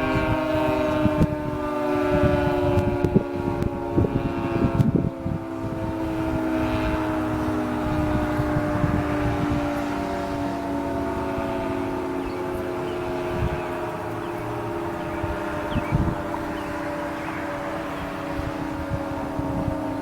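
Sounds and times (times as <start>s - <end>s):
second siren: 0.0s - 20.0s
warning siren steady tone: 0.0s - 20.0s.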